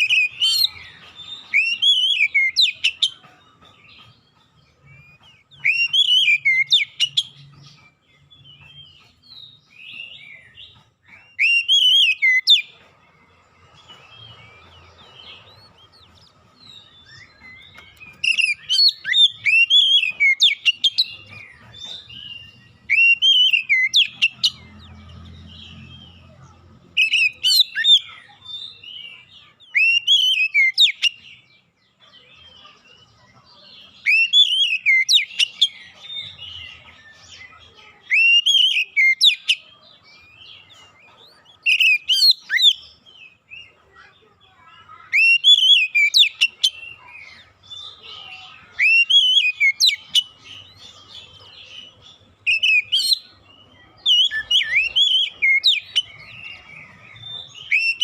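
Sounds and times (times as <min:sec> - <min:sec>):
bird singing whistled phrases: 0:05.6 - 0:07.3, 0:16.8 - 0:21.2, 0:29.7 - 0:31.2, 0:38.1 - 0:39.6, 0:45.1 - 0:47.1, 0:48.7 - 0:50.4, 0:53.9 - 0:58.0.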